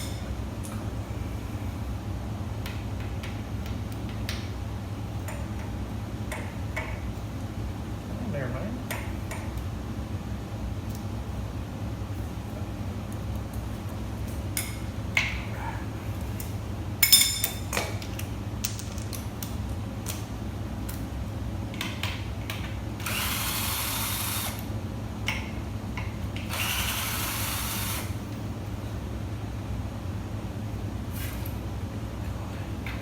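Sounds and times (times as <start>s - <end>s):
steady low hum: 0.0s - 33.0s
power tool on bolts: 23.0s - 24.6s, 26.4s - 28.2s.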